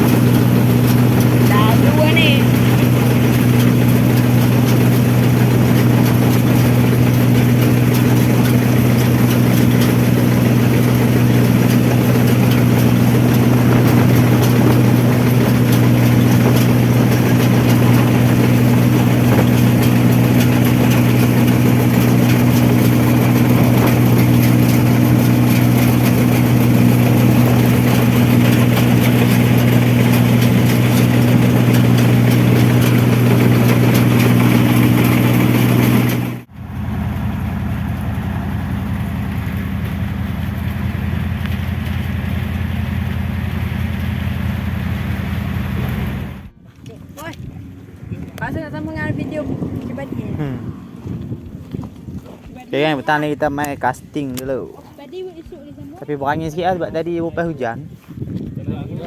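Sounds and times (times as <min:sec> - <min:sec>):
mechanical clatter: 0:00.0 - 0:36.5
combine harvester engine humming: 0:00.0 - 0:58.3.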